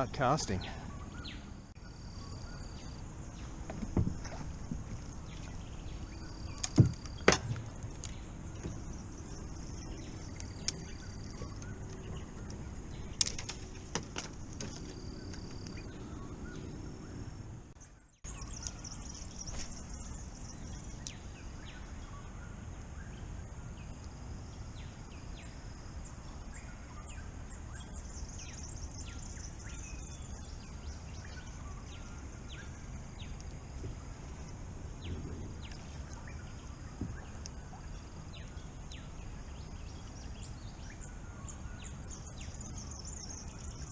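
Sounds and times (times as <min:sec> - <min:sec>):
birds chirping and calling: 0:00.0 - 0:16.9
outdoor background noise: 0:00.0 - 0:43.9.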